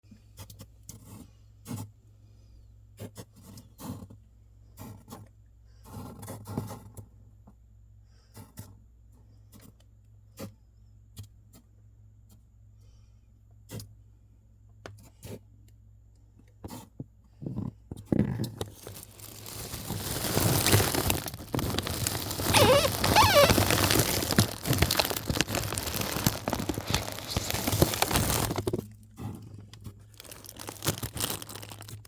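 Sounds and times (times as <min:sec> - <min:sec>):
freezer humming: 0:18.6 - 0:29.0, 0:30.0 - 0:32.0.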